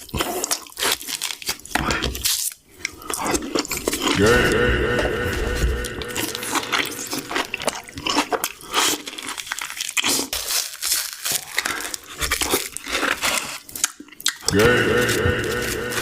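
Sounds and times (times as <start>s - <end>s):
potato chips crunching: 0.0s - 4.2s, 6.4s - 16.0s
chip bag crinkling: 7.6s - 14.5s.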